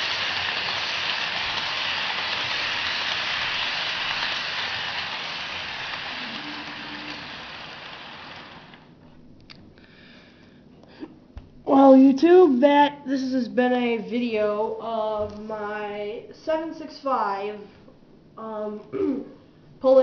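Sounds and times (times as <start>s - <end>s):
model train rolling rattle: 0.0s - 8.9s.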